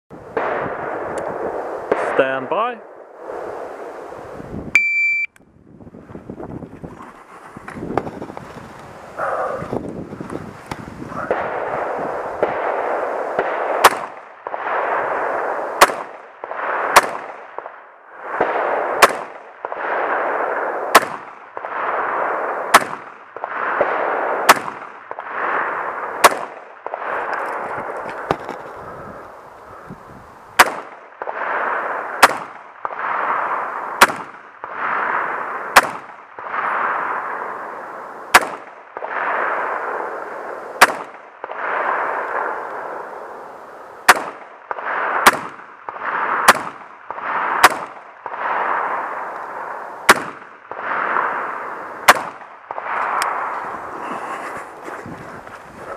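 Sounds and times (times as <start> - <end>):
rifle shots with echo: 0.2 - 3.9, 11.1 - 28.4, 30.6 - 54.0.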